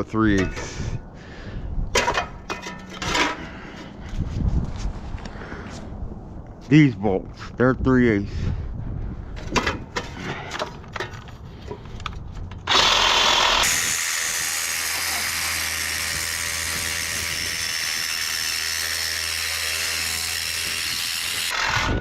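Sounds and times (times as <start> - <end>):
power tool cutting metal: 12.7 - 22.0.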